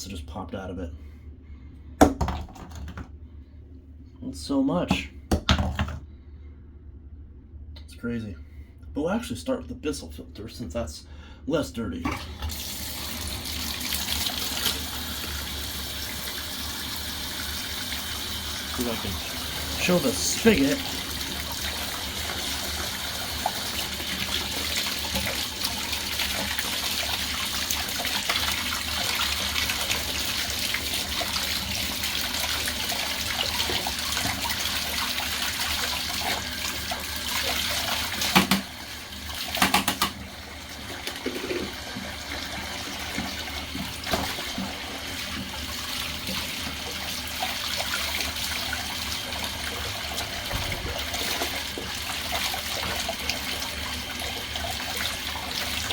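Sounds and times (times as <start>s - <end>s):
water running from tub spigot: 12.1s - 55.9s.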